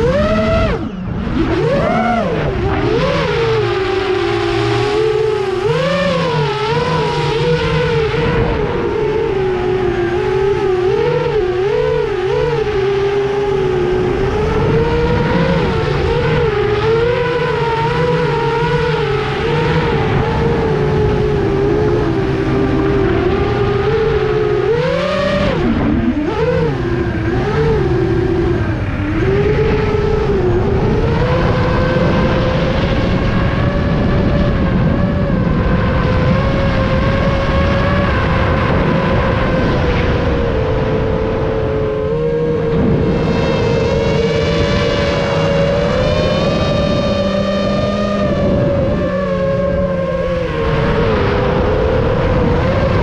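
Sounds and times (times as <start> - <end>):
drone motors whining: 0.0 - 53.0.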